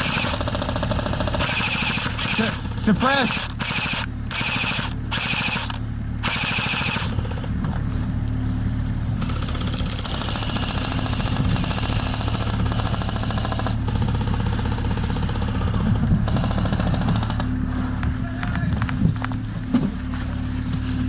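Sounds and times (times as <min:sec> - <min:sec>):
airsoft rifles firing in bursts: 0:00.0 - 0:07.6, 0:09.2 - 0:17.6
steady low hum: 0:00.0 - 0:21.0.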